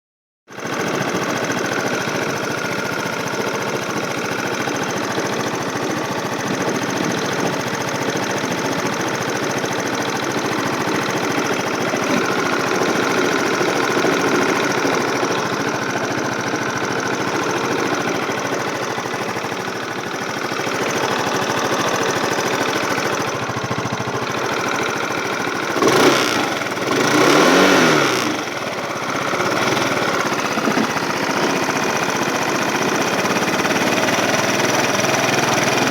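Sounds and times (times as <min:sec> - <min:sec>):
scooter engine running: 0:00.5 - 0:35.9.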